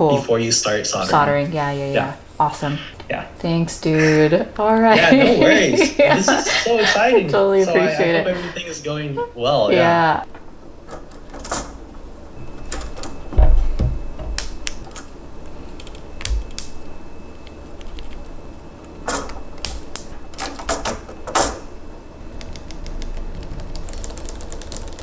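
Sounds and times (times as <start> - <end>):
dull knock: 13.4 - 14.4
mechanical keyboard clicking: 22.3 - 25.0.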